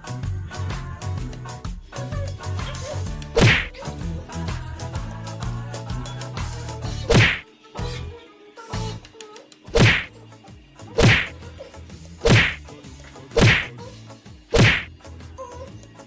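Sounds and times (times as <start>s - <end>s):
background music: 0.0s - 16.0s
sharp whip-like hit: 3.4s - 3.7s, 7.1s - 7.4s, 9.8s - 10.1s, 11.0s - 11.4s, 12.2s - 12.6s, 13.4s - 13.7s, 14.5s - 14.9s.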